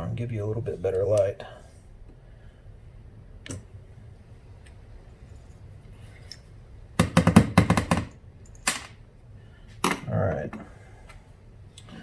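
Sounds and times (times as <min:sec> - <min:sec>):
rapid sharp knocks: 0:07.0 - 0:08.1.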